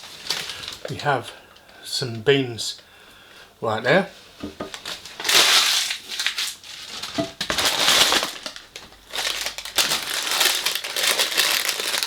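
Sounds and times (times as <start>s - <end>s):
paper packaging crinkling: 0.0s - 1.1s, 4.7s - 12.0s.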